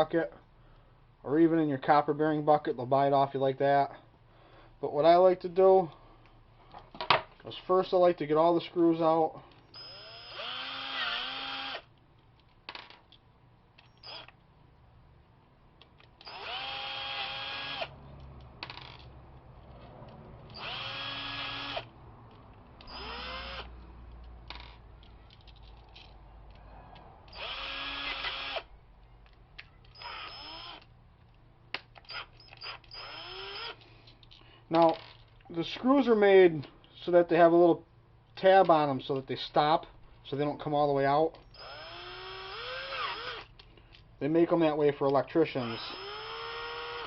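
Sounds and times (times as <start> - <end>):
power drill whining: 9.7 - 11.9, 13.9 - 14.4, 16.2 - 17.9, 20.5 - 21.9, 22.8 - 23.7, 27.3 - 28.7, 29.9 - 30.9, 32.0 - 33.8, 41.5 - 43.5, 45.6 - 47.0.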